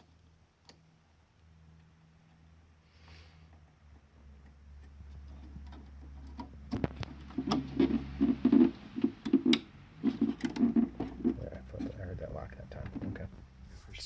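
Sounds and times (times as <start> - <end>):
plastic parts clicking and knocking: 4.8 - 12.0.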